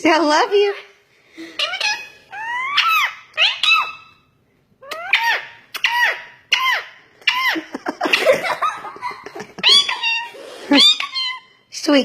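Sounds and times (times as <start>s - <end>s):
parrot squeaky calls: 0.4s - 8.3s, 9.6s - 11.7s.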